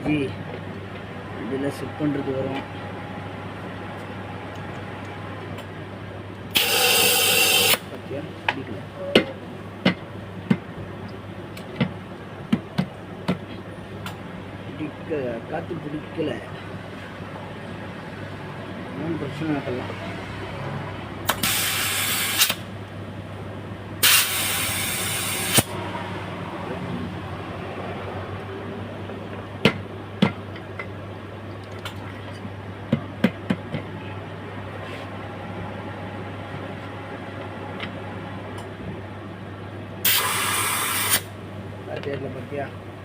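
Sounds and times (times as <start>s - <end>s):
compressed air hissing: 6.5s - 7.9s, 21.3s - 22.6s, 24.0s - 25.7s, 40.0s - 41.3s.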